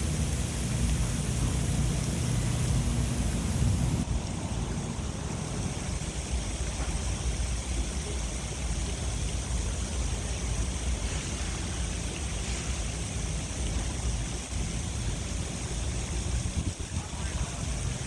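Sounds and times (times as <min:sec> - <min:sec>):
low rumble: 0:00.0 - 0:06.0
fountain water rushing: 0:00.0 - 0:18.0.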